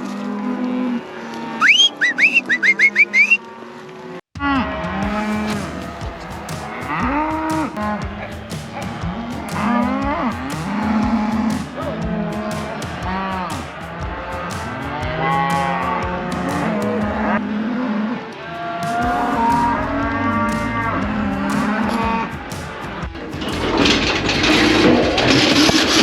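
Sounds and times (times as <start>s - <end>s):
cattle mooing: 0.0s - 13.6s, 14.7s - 26.0s
short rising whistles: 1.6s - 3.4s.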